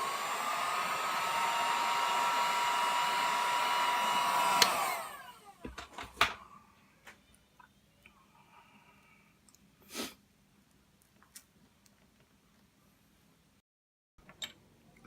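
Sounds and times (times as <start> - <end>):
heat gun blowing: 0.0 - 5.6
heat gun switch click: 4.6 - 4.9.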